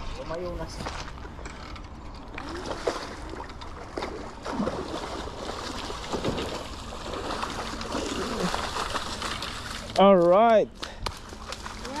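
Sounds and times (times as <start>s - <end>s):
flowing river water: 2.3s - 10.0s.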